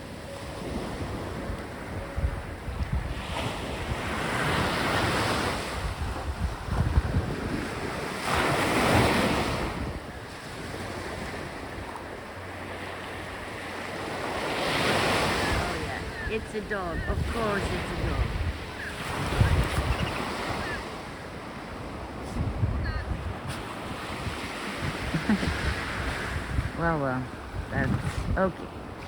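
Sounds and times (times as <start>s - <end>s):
sea waves breaking on beach: 0.0s - 29.0s
wind buffeting microphone: 0.0s - 29.0s.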